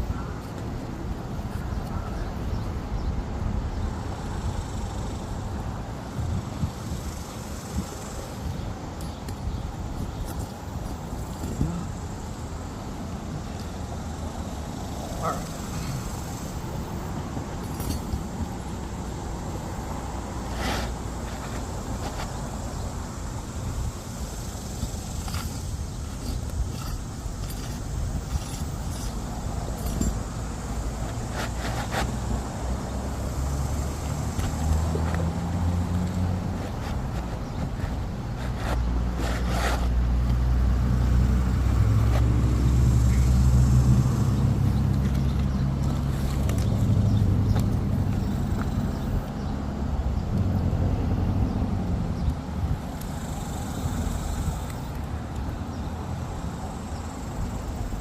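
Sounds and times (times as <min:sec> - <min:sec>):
low engine hum: 0:09.6 - 0:58.0
short clicks or scrapes: 0:36.6 - 0:40.0
brief rustle: 0:36.6 - 0:40.4.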